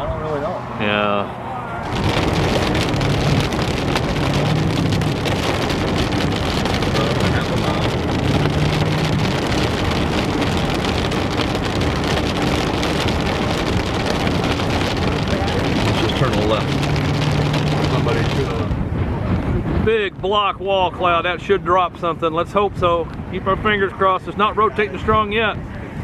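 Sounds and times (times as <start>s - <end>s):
tyre and engine hum: 0.0s - 19.9s.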